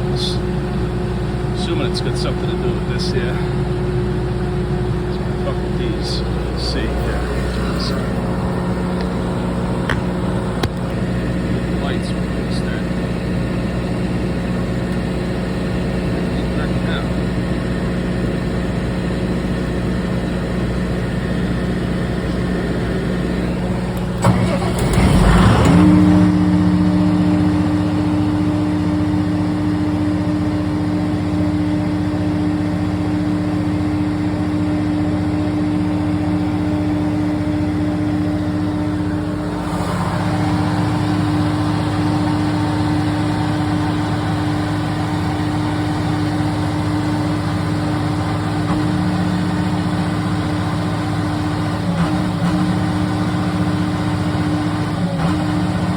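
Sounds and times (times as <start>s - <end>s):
steady hum: 0.0s - 19.1s, 26.2s - 49.8s
generator engine running: 0.0s - 55.9s.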